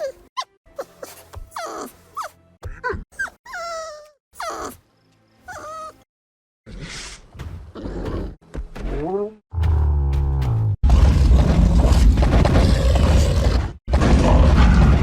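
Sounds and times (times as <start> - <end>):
creature whimpers and yelps: 0.0 - 4.8, 5.5 - 6.0.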